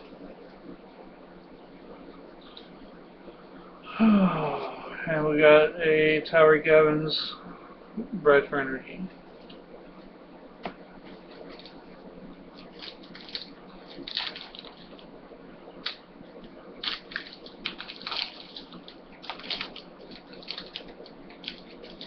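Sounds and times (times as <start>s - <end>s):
faint steady hum: 0.0s - 22.0s
card wrappers rustling and crinkling: 11.1s - 11.8s, 12.5s - 15.0s, 16.8s - 22.0s.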